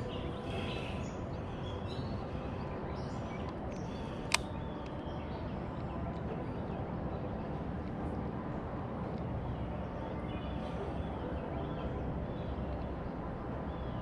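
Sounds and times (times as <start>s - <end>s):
outdoor background noise: 0.0s - 14.0s
sharp click: 4.3s - 4.5s.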